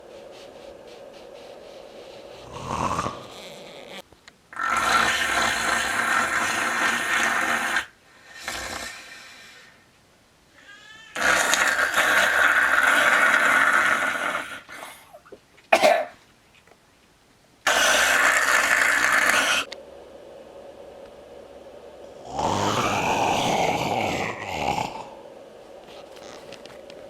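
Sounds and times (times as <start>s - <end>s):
quiet breaths: 0.0s - 15.5s, 17.6s - 27.0s
person snoring loudly: 2.4s - 4.0s, 4.6s - 9.7s, 11.2s - 14.8s, 17.7s - 19.7s, 22.2s - 25.2s.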